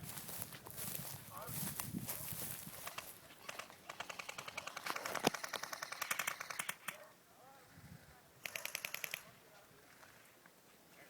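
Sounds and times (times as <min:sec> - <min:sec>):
airsoft gun automatic fire: 0:03.5 - 0:07.0, 0:08.4 - 0:09.2.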